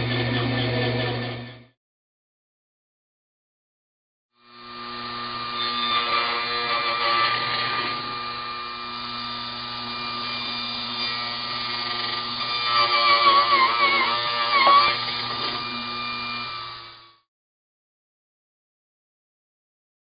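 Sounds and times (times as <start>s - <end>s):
lathe motor hum and whine: 4.4s - 17.2s.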